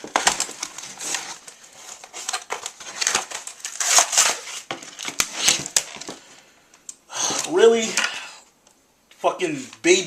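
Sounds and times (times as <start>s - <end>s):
plastic packaging crinkling: 0.0s - 6.4s.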